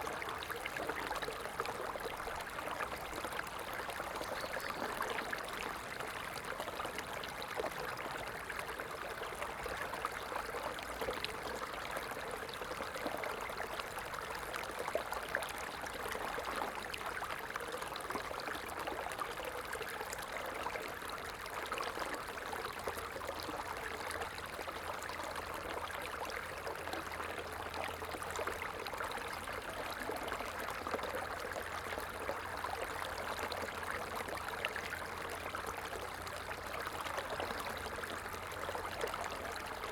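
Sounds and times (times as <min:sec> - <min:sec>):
stream babbling: 0:00.0 - 0:12.6.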